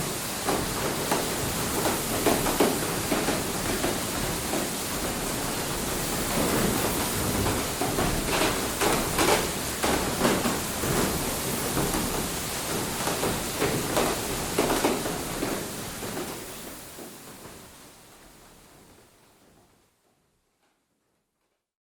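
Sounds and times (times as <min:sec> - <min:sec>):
water rushing: 0:00.0 - 0:16.9.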